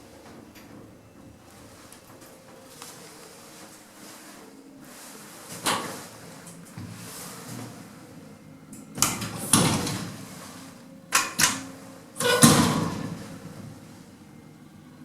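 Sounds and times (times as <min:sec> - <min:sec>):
lift doors clunking: 0:08.7 - 0:14.1.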